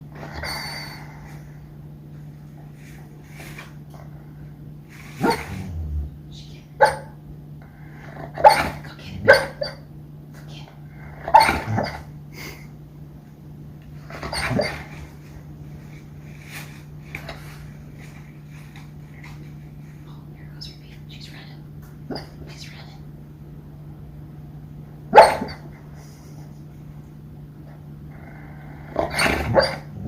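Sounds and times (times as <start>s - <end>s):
dog woofing in its sleep: 0.1s - 1.5s, 5.0s - 7.2s, 11.0s - 12.2s, 14.1s - 15.4s, 28.1s - 30.0s.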